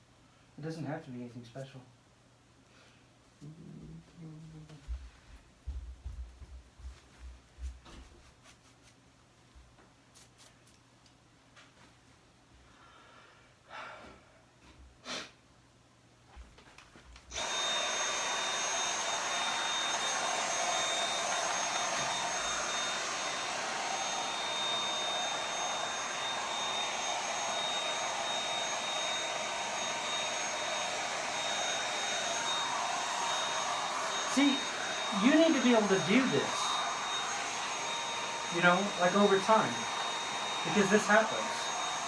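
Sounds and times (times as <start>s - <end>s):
vacuum cleaner whining: 17.3s - 42.0s.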